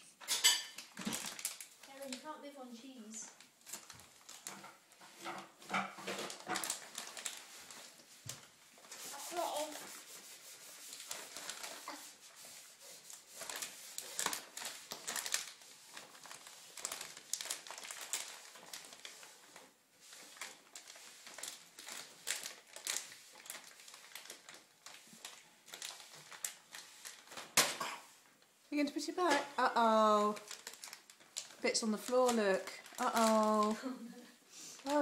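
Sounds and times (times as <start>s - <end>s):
plastic packaging crinkling: 0.3s - 9.9s, 10.6s - 35.0s.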